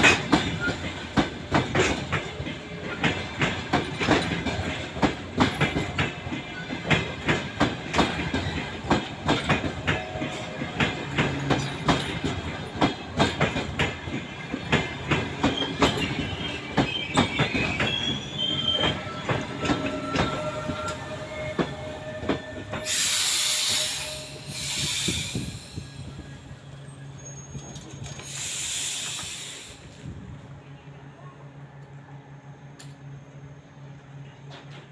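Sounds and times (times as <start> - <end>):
train wheels clacking over rail joints: 0.0 - 25.8
brake squeal: 15.5 - 29.7
compressed-air hiss from brakes: 22.8 - 26.2, 28.1 - 30.1.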